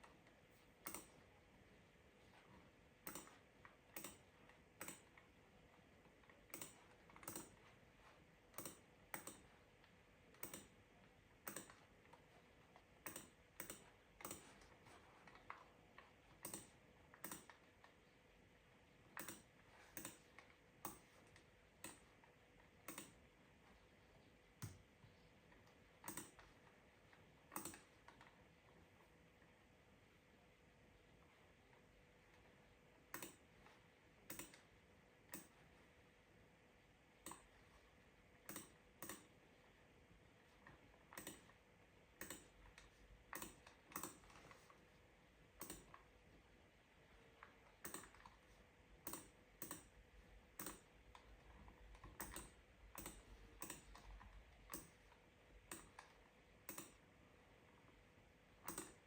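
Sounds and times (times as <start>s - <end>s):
faint steady hum: 0.0s - 59.0s
keyboard keys clicking: 0.8s - 1.1s, 3.0s - 3.4s, 6.5s - 7.6s, 16.4s - 17.6s, 26.1s - 26.4s, 34.3s - 34.6s, 52.0s - 55.0s.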